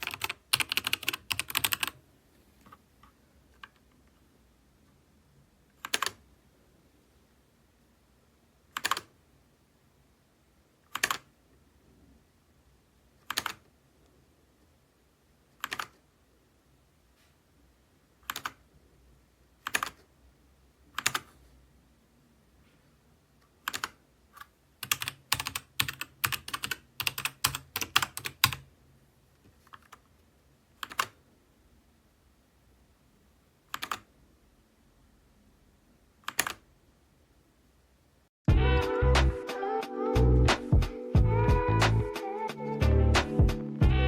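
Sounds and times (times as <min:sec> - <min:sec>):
mechanical keyboard typing: 0:00.0 - 0:02.0, 0:05.8 - 0:06.2, 0:08.7 - 0:09.1, 0:10.9 - 0:11.3, 0:13.2 - 0:13.7, 0:15.6 - 0:16.0, 0:18.2 - 0:18.6, 0:19.6 - 0:20.1, 0:20.9 - 0:21.3, 0:23.6 - 0:28.7, 0:30.8 - 0:31.2, 0:33.7 - 0:34.1, 0:36.2 - 0:36.6.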